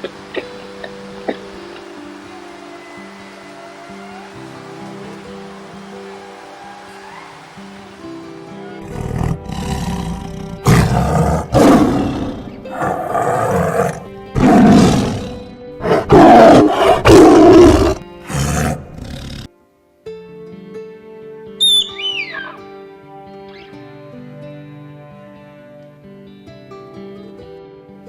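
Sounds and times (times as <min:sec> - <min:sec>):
background music with held tones: 0:00.0 - 0:28.0
big cat roaring: 0:08.8 - 0:19.5.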